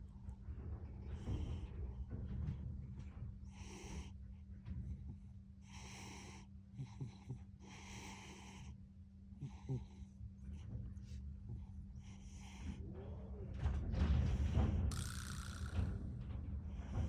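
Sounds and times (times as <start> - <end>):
cat snoring: 3.5 - 4.1, 5.6 - 8.8, 9.4 - 10.1
low hum: 14.5 - 17.0.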